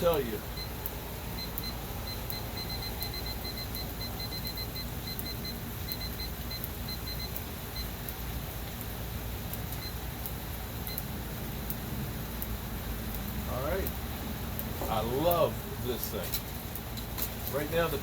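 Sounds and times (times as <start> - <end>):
short high beeps: 1.4 - 7.9
steady rain: 7.3 - 18.0.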